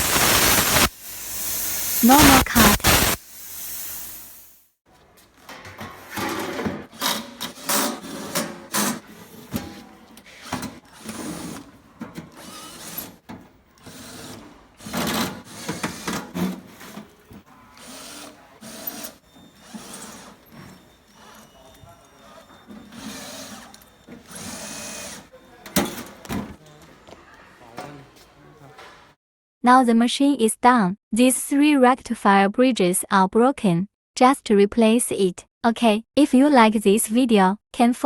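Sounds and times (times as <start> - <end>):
machine whirring: 0.0 - 4.6, 6.9 - 26.6
tools clattering and scraping: 5.2 - 27.2.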